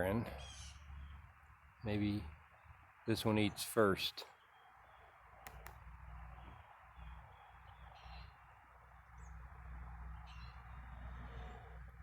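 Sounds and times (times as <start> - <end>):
faint bird chirp: 0.0 - 12.0
low outdoor rumble: 4.6 - 12.0.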